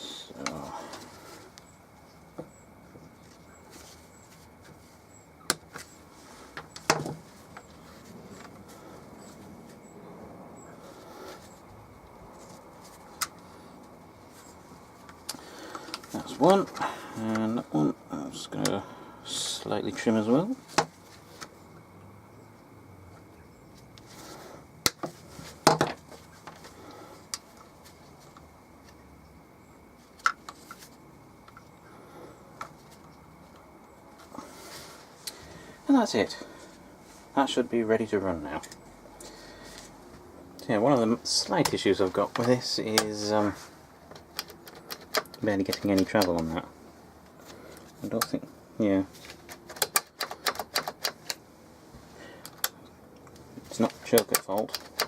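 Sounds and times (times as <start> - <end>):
small parts clicking and knocking: 44.1 - 46.6, 49.2 - 51.4, 52.4 - 55.0.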